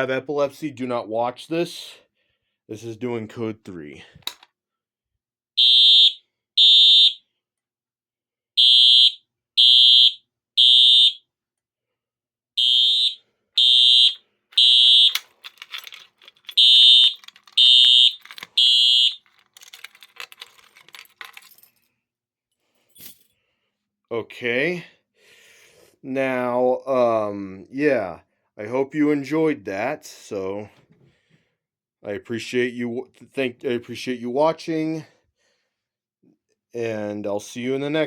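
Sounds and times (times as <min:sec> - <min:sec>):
fire alarm horn blasts: 0:05.6 - 0:07.3, 0:08.6 - 0:11.3, 0:12.6 - 0:15.2, 0:16.6 - 0:19.2.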